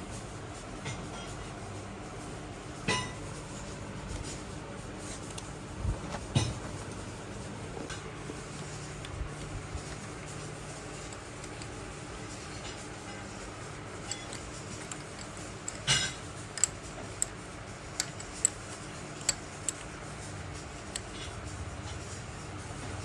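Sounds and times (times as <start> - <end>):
steady low hum: 0.0 - 23.0
metallic clinks and knocks of tools: 14.0 - 16.8.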